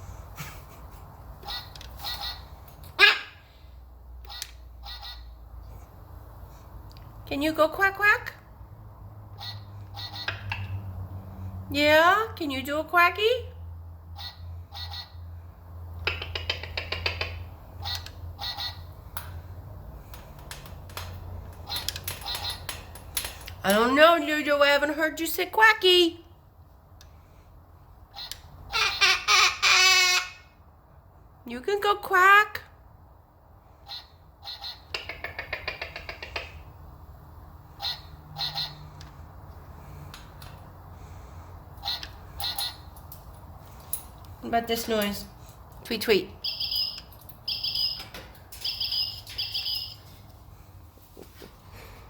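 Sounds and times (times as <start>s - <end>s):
toy duck quacking: 1.4s - 3.4s, 4.2s - 5.3s, 9.4s - 10.6s, 14.2s - 15.2s, 17.8s - 18.9s, 28.1s - 30.5s, 33.8s - 34.9s, 37.8s - 39.0s, 41.8s - 42.8s.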